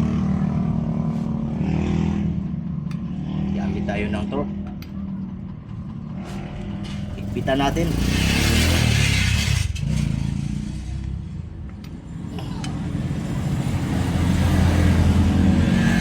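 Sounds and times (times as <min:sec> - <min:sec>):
vehicle engine running: 0:02.5 - 0:08.6.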